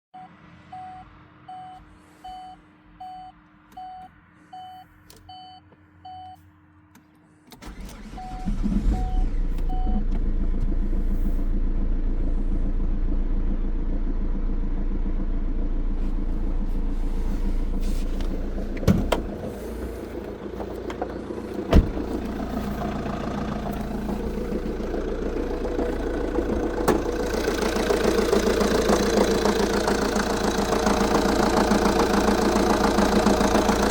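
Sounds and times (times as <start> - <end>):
diesel engine starting and idling: 7.5 - 33.9
sharp engine knocks: 20.3 - 22.4.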